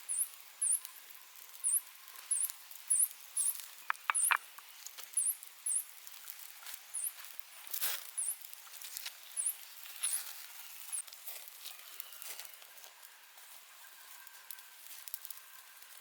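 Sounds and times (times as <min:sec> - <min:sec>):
small bird chirping: 0:00.1 - 0:00.9, 0:01.6 - 0:04.6, 0:05.2 - 0:05.9, 0:07.0 - 0:07.2, 0:08.2 - 0:08.4, 0:09.4 - 0:10.3
crackles and rustling: 0:05.9 - 0:16.0.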